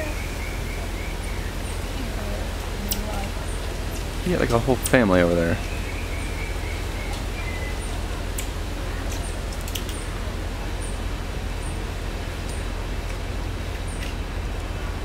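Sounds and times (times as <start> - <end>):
marmosets chirping: 0.0 - 10.1.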